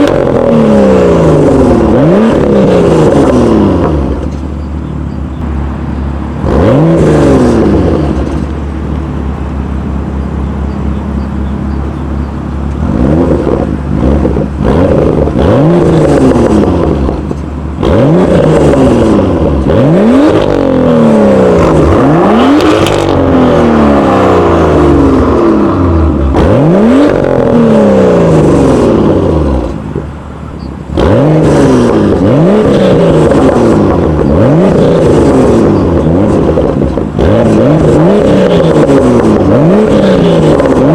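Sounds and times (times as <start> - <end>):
car engine idling and revving: 0.0 - 40.9.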